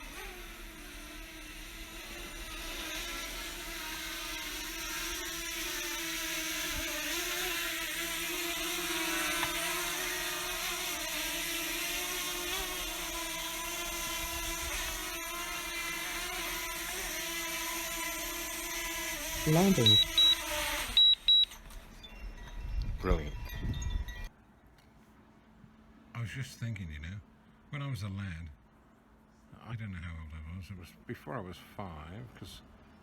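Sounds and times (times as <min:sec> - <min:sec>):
drone propellers whining: 0:12.2 - 0:21.6.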